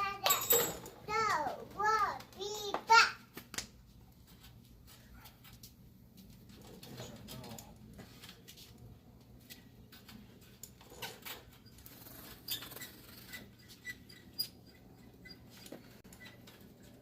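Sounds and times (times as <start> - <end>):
short high squeaks: 11.6 - 16.5.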